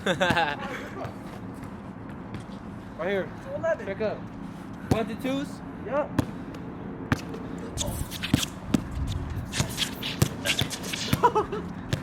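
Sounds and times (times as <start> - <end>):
sneakers scuffing: 6.2 - 12.0.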